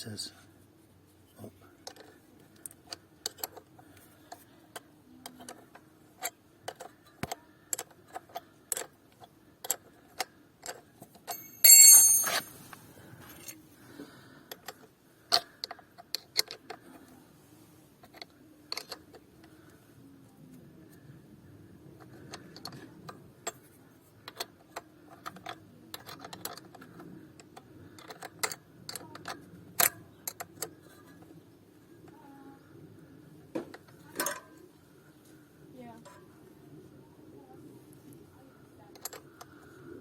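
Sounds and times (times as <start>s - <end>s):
hand tools clicking and tapping: 10.6s - 12.5s
ringing metal clank: 11.3s - 12.6s.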